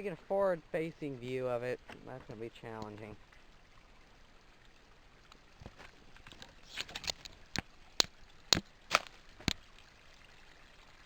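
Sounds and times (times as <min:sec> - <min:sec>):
knocks and snaps over rocks: 0:05.6 - 0:09.7.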